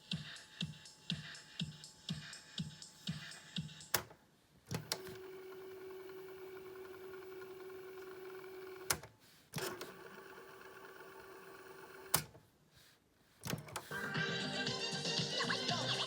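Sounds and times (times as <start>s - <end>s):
tape motor whirring: 4.7s - 9.0s.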